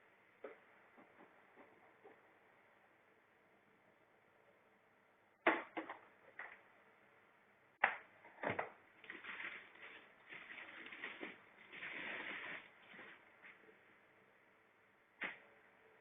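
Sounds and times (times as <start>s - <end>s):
rustling: 9.0s - 13.8s.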